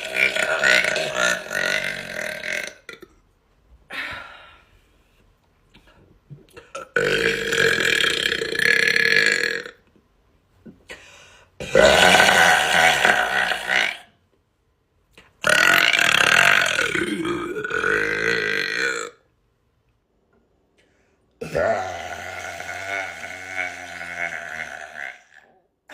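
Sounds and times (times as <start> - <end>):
woman burping: 0.0 - 3.1, 6.4 - 9.8, 11.6 - 14.1, 15.4 - 19.2, 21.4 - 25.6.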